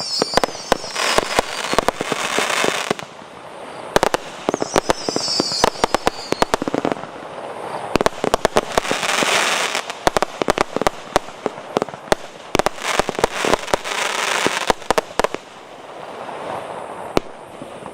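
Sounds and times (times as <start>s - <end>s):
falling firework whistle: 0.0s - 3.0s, 3.7s - 6.9s
firework bangs: 0.0s - 15.5s
firework crackling: 0.0s - 17.9s.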